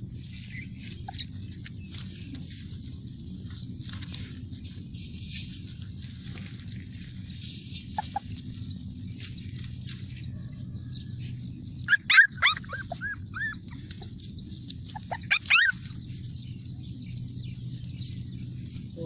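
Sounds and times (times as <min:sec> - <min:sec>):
puppies yelping: 0:00.9 - 0:02.0, 0:07.5 - 0:10.2, 0:11.2 - 0:17.1.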